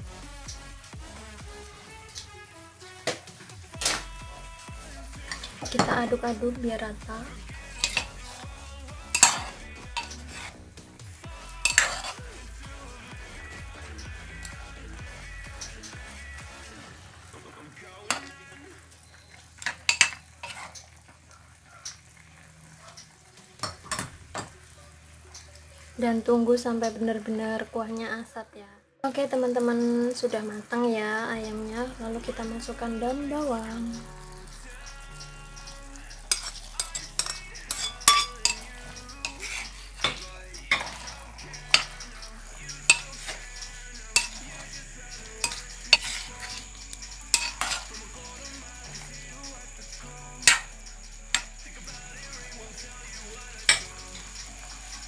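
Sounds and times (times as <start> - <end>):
low sizzle: 0.0 - 28.4, 29.0 - 55.0
spatula scraping and knocking pan: 7.7 - 8.1, 9.1 - 10.6, 11.6 - 12.2, 19.7 - 20.8, 36.3 - 48.2, 50.4 - 51.6, 53.7 - 54.3.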